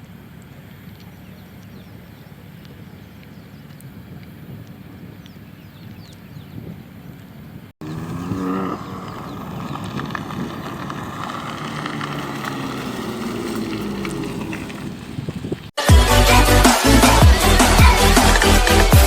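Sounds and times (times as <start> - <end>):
car engine accelerating hard: 7.8 - 19.0.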